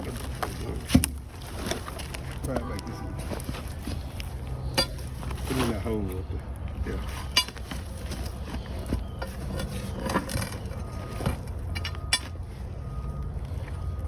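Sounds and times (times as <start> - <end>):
metal clinks: 4.7 - 5.1.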